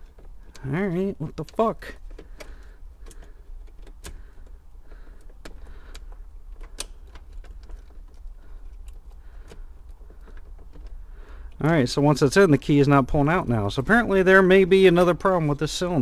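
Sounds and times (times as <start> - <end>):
key clicking in ignition lock: 1.4 - 11.6.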